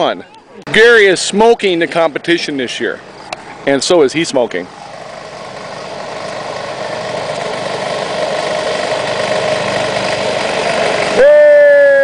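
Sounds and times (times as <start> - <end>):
lawn mower engine running: 2.4 - 11.5.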